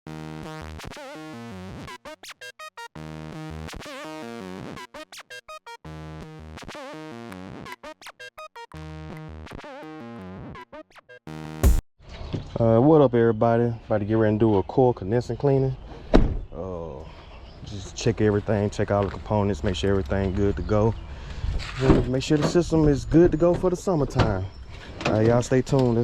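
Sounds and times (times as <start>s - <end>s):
electronic synthesizer music: 0.1s - 11.8s.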